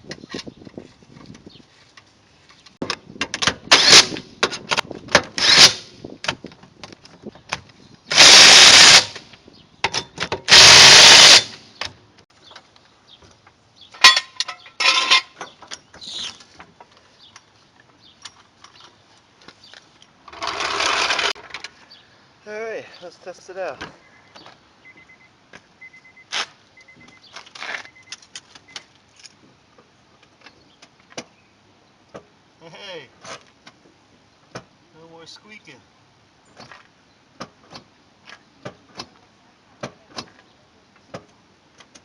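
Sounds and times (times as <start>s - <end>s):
power tool bursts: 3.7s - 4.2s, 5.4s - 5.9s, 8.1s - 9.2s, 10.5s - 11.6s, 20.4s - 21.4s.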